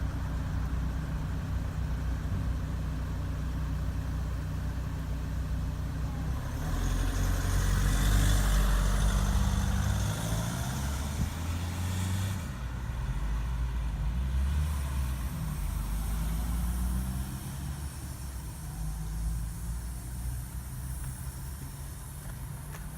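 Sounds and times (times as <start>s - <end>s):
vehicle engine humming: 0.0s - 22.9s
vehicle passing with hiss: 6.0s - 22.9s.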